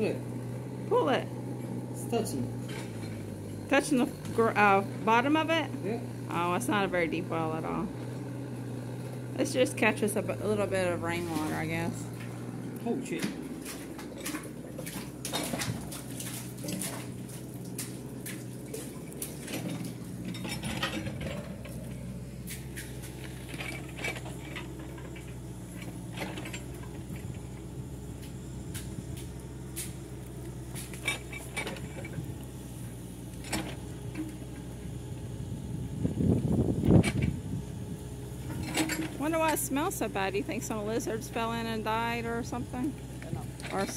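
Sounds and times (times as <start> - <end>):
steady low hum: 0.0 - 43.9
bucket knocking and scraping in well: 13.2 - 21.8.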